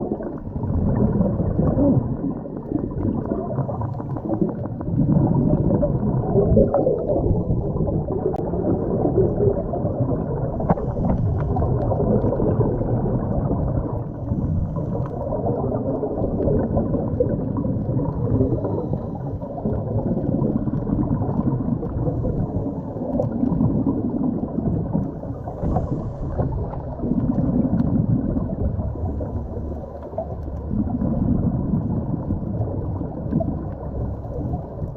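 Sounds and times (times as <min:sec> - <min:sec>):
underwater water rushing: 0:00.0 - 0:34.9.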